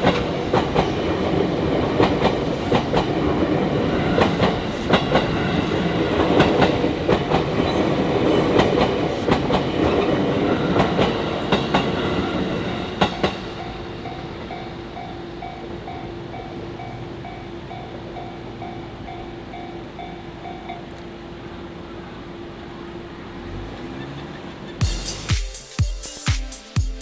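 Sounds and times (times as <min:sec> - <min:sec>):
train wheels clacking over rail joints: 0:00.0 - 0:14.2
train rumble: 0:00.0 - 0:25.9.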